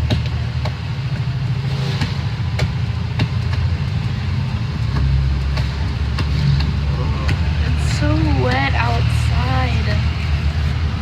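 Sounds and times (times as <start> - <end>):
bus engine rumbling: 0.0 - 11.0.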